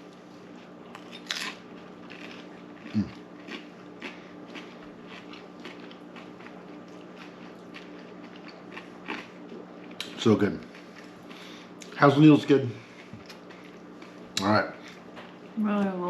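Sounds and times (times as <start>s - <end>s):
chewing crispy food: 0.0s - 15.5s.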